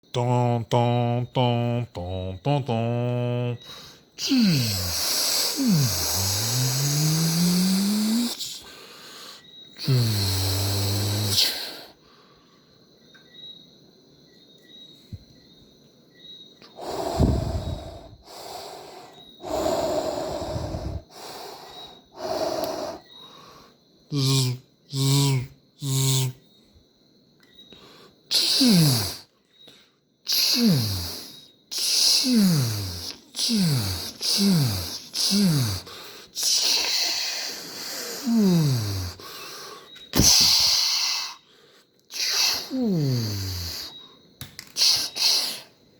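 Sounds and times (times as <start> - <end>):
person making mouth sound effects: 0.0 - 8.6, 9.8 - 11.7, 24.1 - 26.4, 28.3 - 29.2, 30.3 - 37.1.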